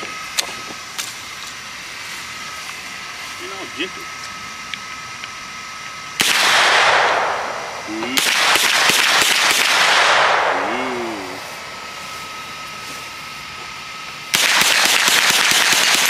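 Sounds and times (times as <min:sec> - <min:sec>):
gunshots: 0:06.2 - 0:11.4, 0:14.3 - 0:16.0.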